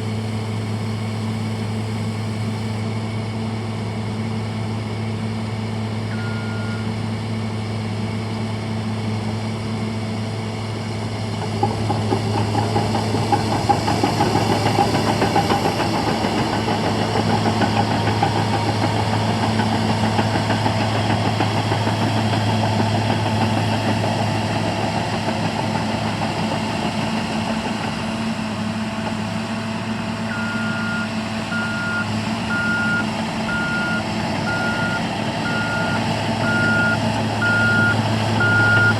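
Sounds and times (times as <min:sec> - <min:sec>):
diesel engine running: 0:00.0 - 0:38.9
reversing alarm beeping: 0:06.1 - 0:06.9, 0:30.3 - 0:38.9.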